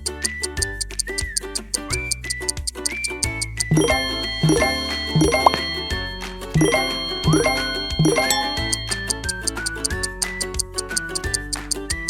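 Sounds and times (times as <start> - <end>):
upbeat synth children's music: 2.6 - 12.0.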